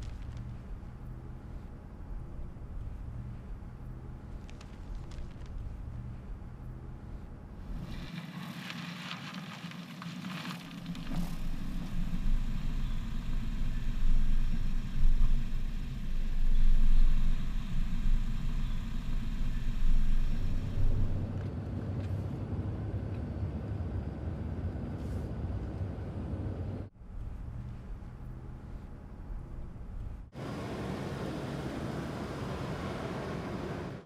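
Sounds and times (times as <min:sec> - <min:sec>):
car engine and road noise: 0:00.0 - 0:34.0.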